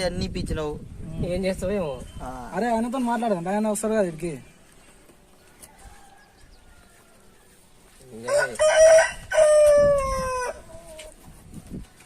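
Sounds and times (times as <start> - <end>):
rooster crowing: 5.6 - 7.6, 8.2 - 10.9.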